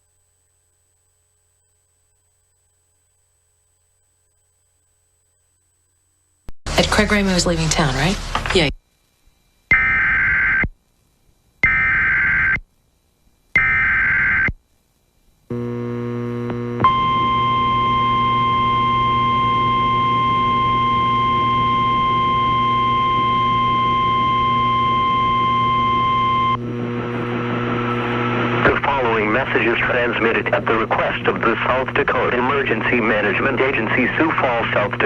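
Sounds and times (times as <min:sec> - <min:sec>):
low buzzing hum: 0:00.0 - 0:35.0
steady attention tone: 0:15.5 - 0:35.0.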